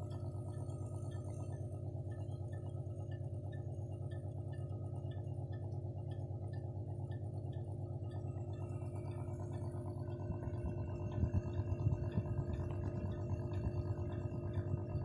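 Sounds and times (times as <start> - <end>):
faint light ticks: 0.0 - 10.2.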